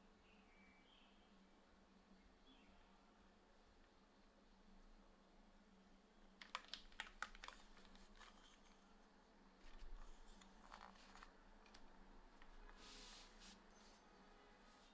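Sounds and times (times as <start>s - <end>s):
mechanical keyboard keystrokes: 6.4s - 8.4s.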